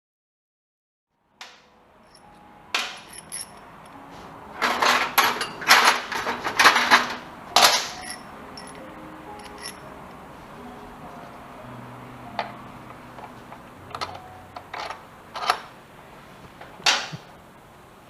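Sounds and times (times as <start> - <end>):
metal tools clanking: 2.8 - 4.0, 4.6 - 9.8, 13.2 - 15.7.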